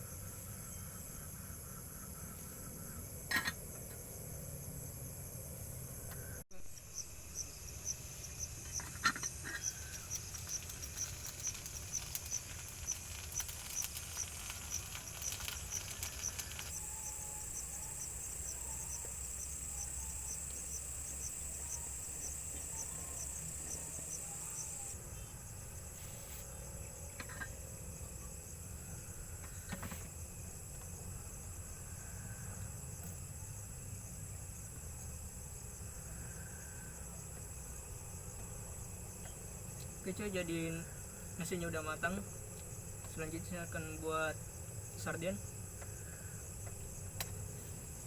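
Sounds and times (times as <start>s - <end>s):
cricket chirping: 0.0s - 48.0s
high-pitched insect drone: 6.2s - 29.6s.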